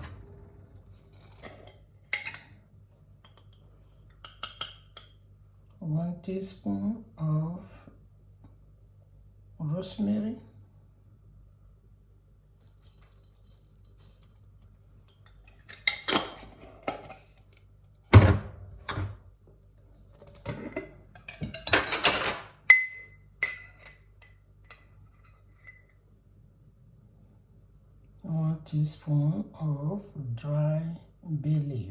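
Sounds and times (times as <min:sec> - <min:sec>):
kitchen utensils knocking and clattering: 0:20.5 - 0:24.0.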